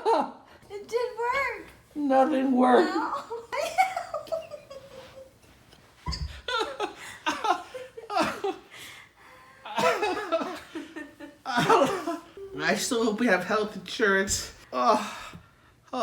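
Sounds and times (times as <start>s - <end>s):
people laughing: 9.7s - 12.4s.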